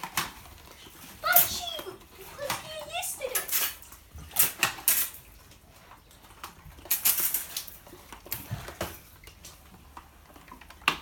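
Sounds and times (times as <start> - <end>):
water guns squirting: 0.0 - 5.6, 6.4 - 9.4.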